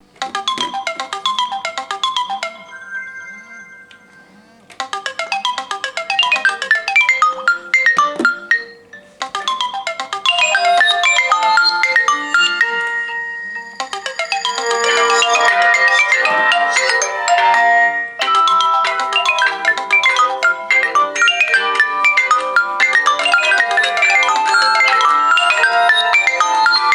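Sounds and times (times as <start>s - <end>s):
marimba-like phone ringtones: 0.0s - 26.9s.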